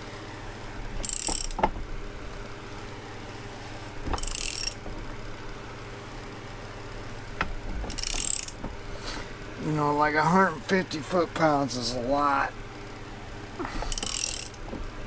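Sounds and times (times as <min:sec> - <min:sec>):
steady low hum: 0:00.0 - 0:15.0
ratchet wrench rasping: 0:01.0 - 0:01.8, 0:04.1 - 0:05.0, 0:07.9 - 0:08.6, 0:13.7 - 0:14.7.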